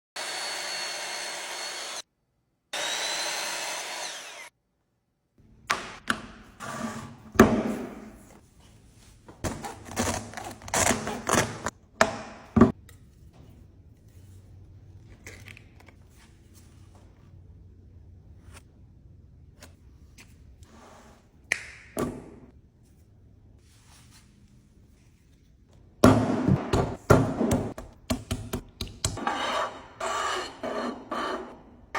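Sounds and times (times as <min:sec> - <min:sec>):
power tool whining: 0:00.2 - 0:02.0, 0:02.8 - 0:04.5.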